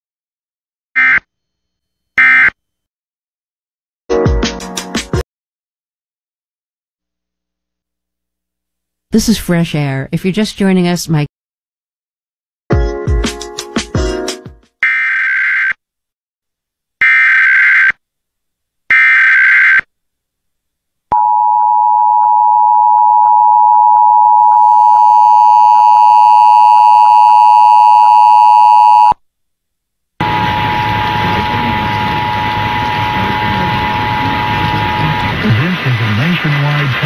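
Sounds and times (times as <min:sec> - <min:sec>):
hissy broadcast feed: 0:30.2 - 0:37.0.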